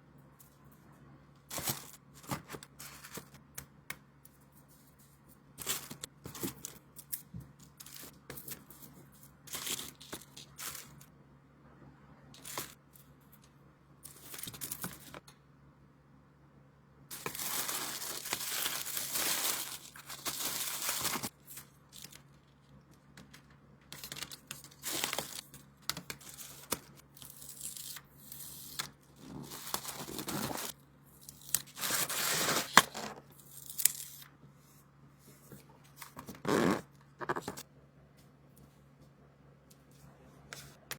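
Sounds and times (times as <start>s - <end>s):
packaging tearing and crinkling: 17.1s - 22.3s, 24.0s - 28.0s, 29.4s - 34.2s.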